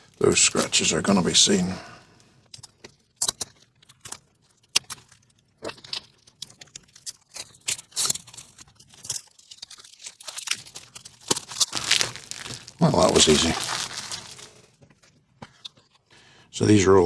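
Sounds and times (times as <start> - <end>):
packaging crinkling: 9.7 - 14.6
knife cutting packaging: 10.2 - 14.6
short scrapes: 11.3 - 14.5.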